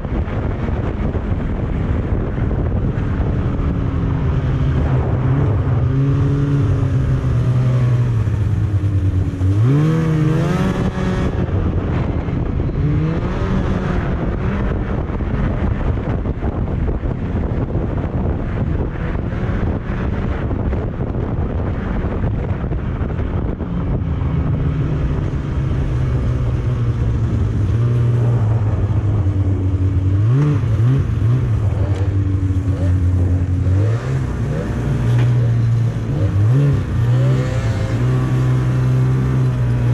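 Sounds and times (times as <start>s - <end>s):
wind and track noise: 0.0s - 39.9s
snowmobile engine revving: 0.1s - 16.1s, 24.1s - 39.9s.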